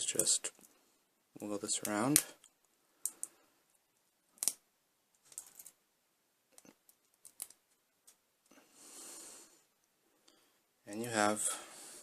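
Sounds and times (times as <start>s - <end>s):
plastic clicks and crackles: 6.5s - 8.2s.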